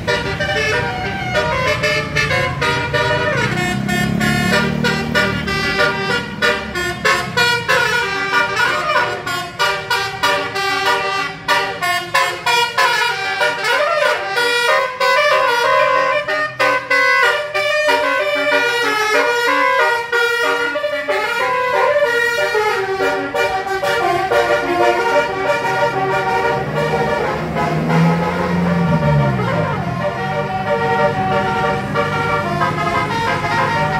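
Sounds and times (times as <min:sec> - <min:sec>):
heavy engine rumble: 0:00.0 - 0:33.9
musical air horn melody: 0:00.0 - 0:33.9.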